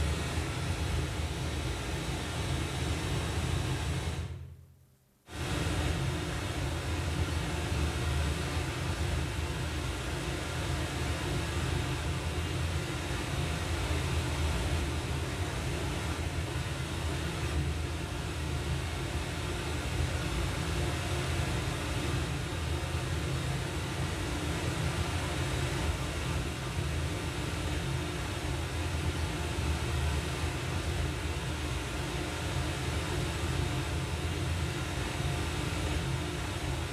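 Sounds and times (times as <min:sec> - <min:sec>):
dense noise with heavy bass: 0:00.0 - 0:36.9.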